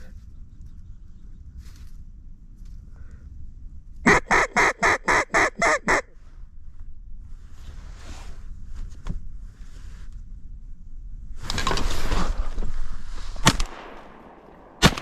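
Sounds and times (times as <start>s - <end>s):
duck call quacks: 4.1s - 6.1s.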